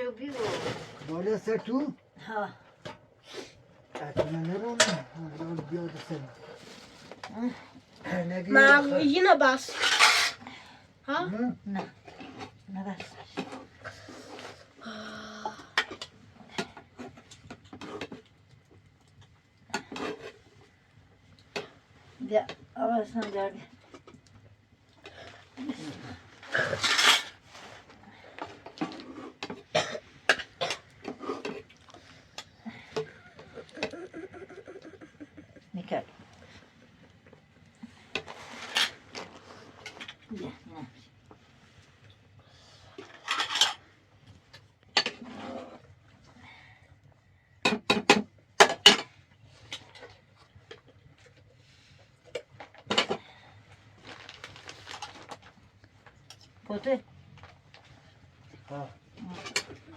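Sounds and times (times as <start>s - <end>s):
dishes and utensils clattering: 4.0s - 6.3s, 43.0s - 43.8s.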